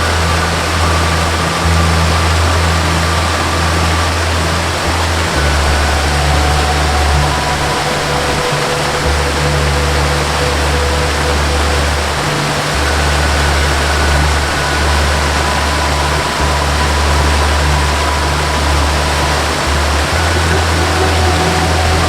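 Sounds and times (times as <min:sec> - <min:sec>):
slow soft melody: 0:00.0 - 0:22.0
waterfall rushing: 0:00.0 - 0:22.0.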